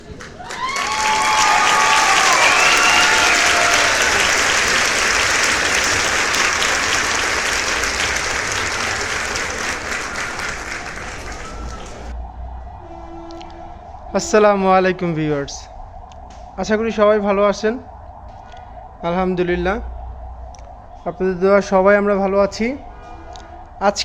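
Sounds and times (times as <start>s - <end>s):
crowd cheering: 0.0s - 12.2s
crowd clapping: 0.0s - 12.2s.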